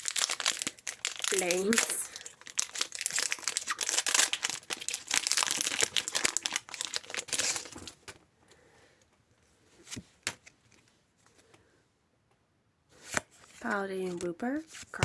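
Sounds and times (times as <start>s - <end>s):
foil wrapper crinkling and tearing: 0.0s - 8.1s.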